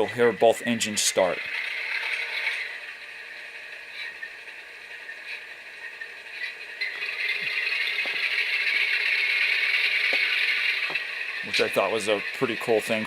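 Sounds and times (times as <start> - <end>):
model locomotive diesel engine start-up: 6.8 - 13.0.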